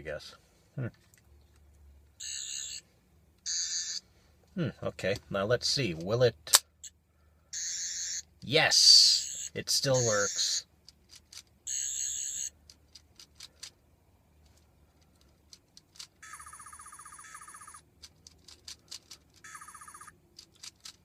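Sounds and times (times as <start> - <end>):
toy electronic sound effect: 2.2 - 2.8, 3.5 - 4.0, 7.6 - 8.3, 8.9 - 10.7, 11.7 - 12.6, 16.2 - 17.8, 19.4 - 20.1.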